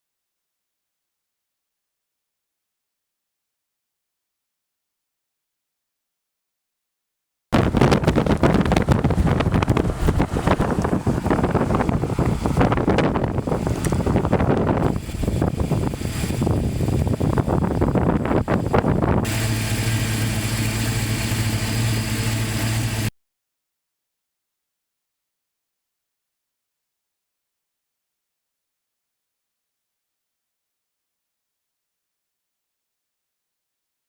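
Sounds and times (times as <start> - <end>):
strong wind buffeting microphone: 7.6 - 19.7.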